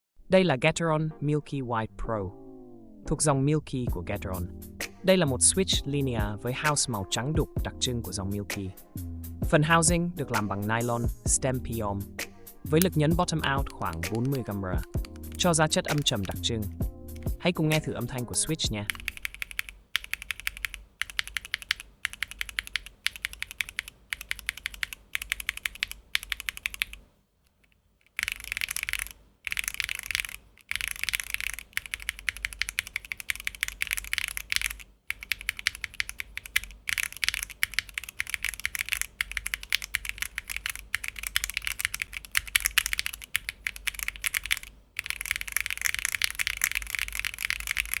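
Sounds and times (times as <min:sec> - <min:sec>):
mechanical keyboard typing: 0:12.8 - 0:17.4, 0:18.7 - 0:48.0.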